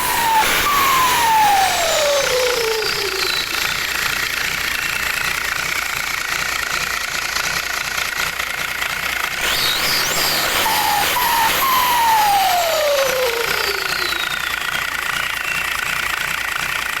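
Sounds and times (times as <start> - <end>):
turbo whistle falling in pitch: 0.0 - 4.1, 9.4 - 14.8
turbocharged engine revving: 0.0 - 15.6.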